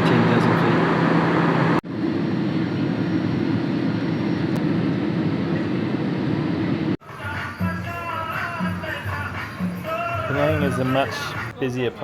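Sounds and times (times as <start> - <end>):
jet engines droning in cabin: 0.0 - 7.0.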